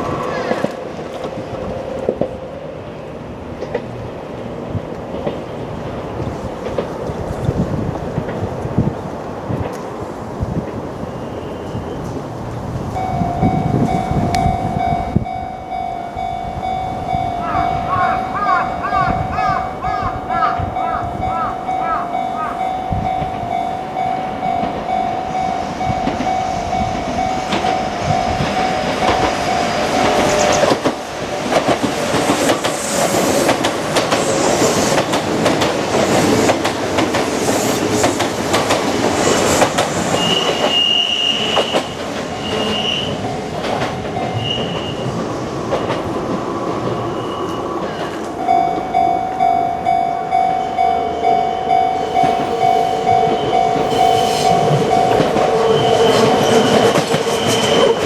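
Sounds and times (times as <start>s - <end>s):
train wheels rumbling and clattering: 0.0s - 22.2s, 22.8s - 58.0s
level crossing bell ringing: 13.0s - 30.5s, 42.3s - 44.7s, 48.4s - 56.9s
short high-pitched tones: 48.4s - 58.0s.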